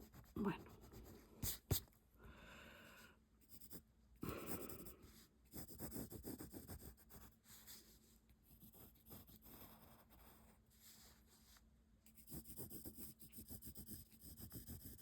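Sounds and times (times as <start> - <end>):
pencil scratching on paper: 0.0 - 1.8, 3.5 - 15.0.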